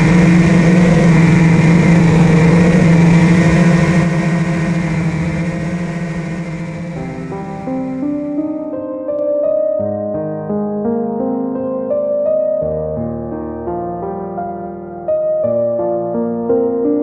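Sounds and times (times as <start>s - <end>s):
drone motors humming: 0.0s - 8.7s
piano music: 0.0s - 17.0s.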